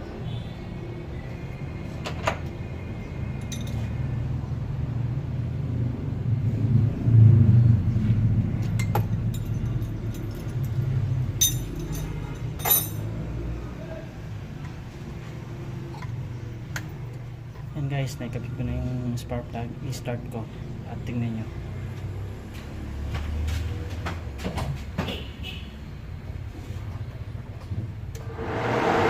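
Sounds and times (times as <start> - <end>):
metallic clinks of hand tools: 11.4 - 13.1.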